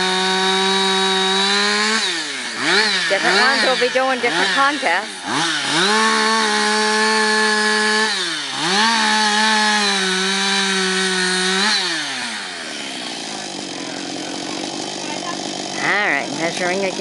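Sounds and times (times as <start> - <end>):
chainsaw cutting log: 0.0 - 17.0.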